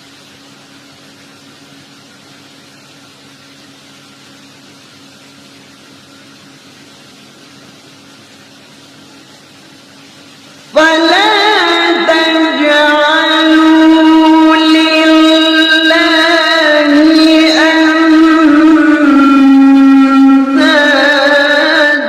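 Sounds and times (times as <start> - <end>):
low hum and hiss: 0.0 - 22.0
person chanting recitation: 10.8 - 22.0.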